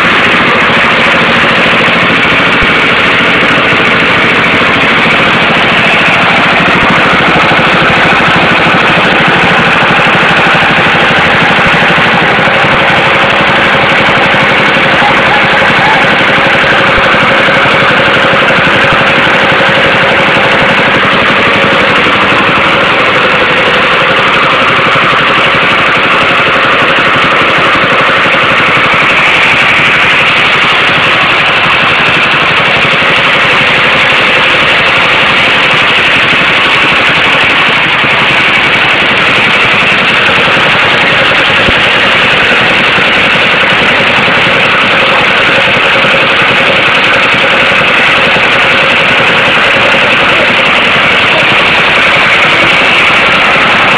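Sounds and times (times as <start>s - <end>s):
diesel engine running: 0.0s - 53.9s.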